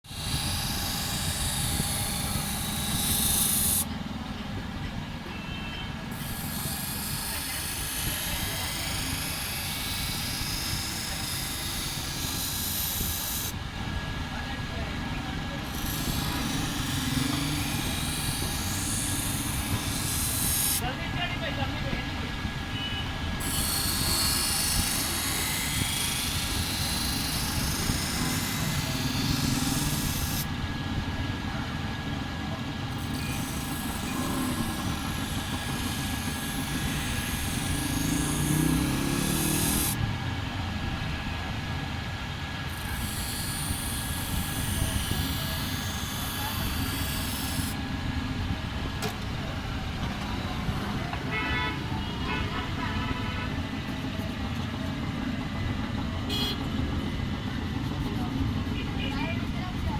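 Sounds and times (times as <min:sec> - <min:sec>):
grinding wheel motor rumbling: 0:00.0 - 0:05.3, 0:05.9 - 0:59.9
knife blade grinding hiss: 0:00.1 - 0:03.9, 0:06.2 - 0:13.6, 0:15.7 - 0:20.8, 0:23.4 - 0:30.5, 0:33.0 - 0:40.0, 0:42.7 - 0:47.8.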